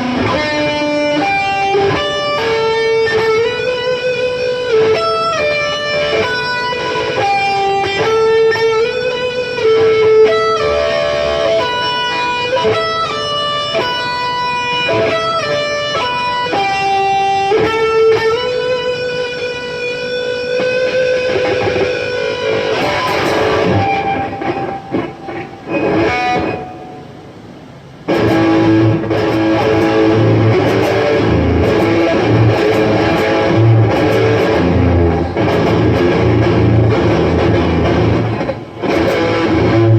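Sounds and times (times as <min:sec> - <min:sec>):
electric guitar melody: 0:00.0 - 0:39.9
full heavy music section: 0:20.6 - 0:27.2, 0:28.1 - 0:39.9.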